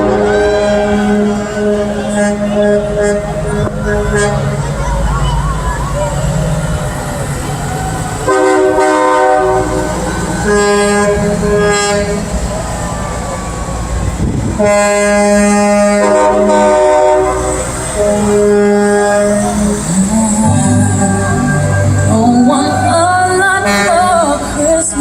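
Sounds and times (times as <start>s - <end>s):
train air horn blasts: 0.0s - 4.7s, 8.3s - 12.5s, 14.5s - 22.4s, 23.6s - 24.5s
low engine rumble: 0.0s - 25.0s.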